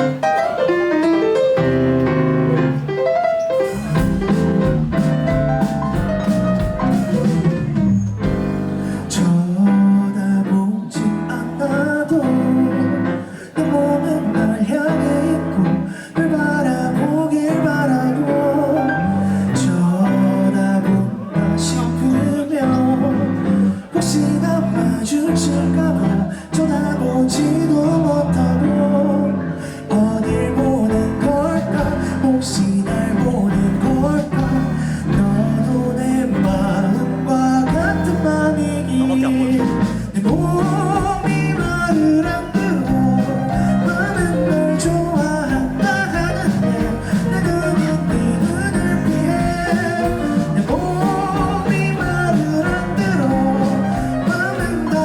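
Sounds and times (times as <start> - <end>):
live rock band playing: 0.0 - 9.4, 29.9 - 55.0.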